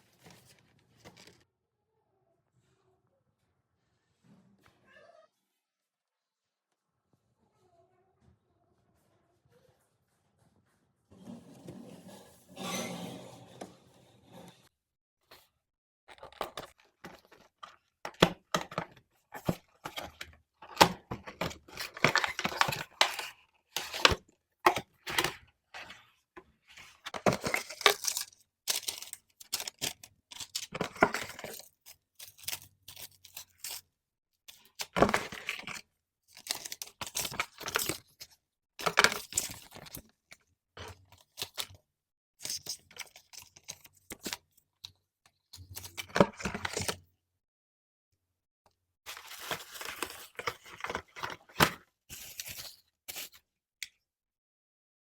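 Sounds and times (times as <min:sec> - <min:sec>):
packaging tearing and rustling: 0:18.6 - 0:24.2, 0:27.2 - 0:33.8, 0:34.5 - 0:40.1, 0:49.1 - 0:53.4.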